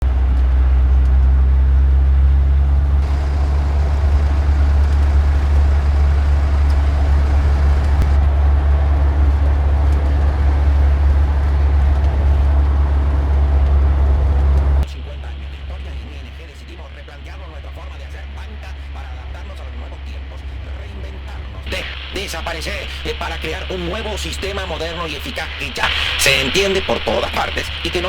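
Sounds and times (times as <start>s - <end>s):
road rumble: 2.4s - 12.5s
car engine: 2.7s - 8.3s.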